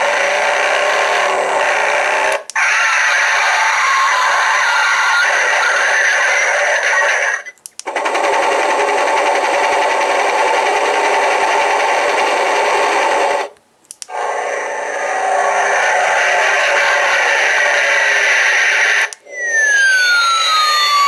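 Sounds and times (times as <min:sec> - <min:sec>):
electronic sound effects from speaker: 0:00.0 - 0:07.6, 0:14.1 - 0:21.0
click: 0:02.4 - 0:02.6, 0:07.5 - 0:07.9, 0:13.6 - 0:14.2
fast pulsing effect: 0:05.0 - 0:13.5, 0:14.1 - 0:21.0.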